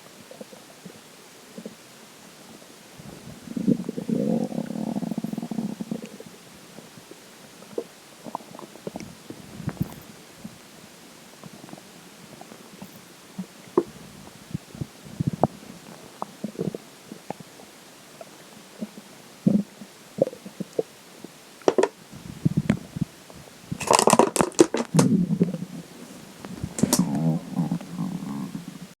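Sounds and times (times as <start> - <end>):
stomach gurgling and growling: 3.0 - 10.7, 11.4 - 29.0
plastic water bottle crackling: 23.7 - 25.5, 26.3 - 27.9.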